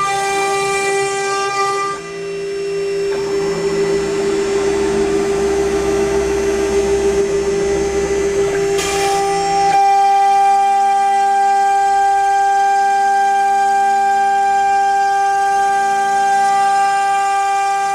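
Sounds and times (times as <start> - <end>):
router spindle whine: 0.0 - 17.9.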